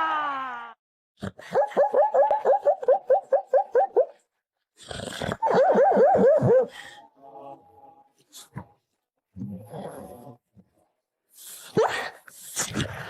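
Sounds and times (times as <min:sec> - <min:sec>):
dog yelping: 0:01.6 - 0:04.2, 0:05.4 - 0:06.7.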